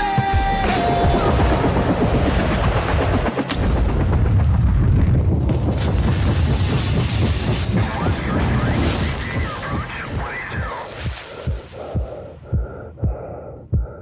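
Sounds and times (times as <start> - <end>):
sharp crack: 3.4 - 11.8
wind buffeting microphone: 4.0 - 12.2.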